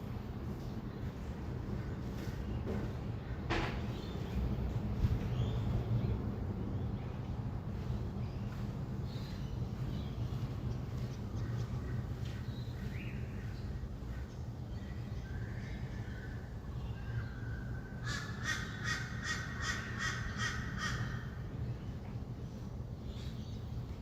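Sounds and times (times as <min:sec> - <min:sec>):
distant city traffic rumble: 0:00.0 - 0:24.0
bird harsh calls: 0:15.6 - 0:21.5.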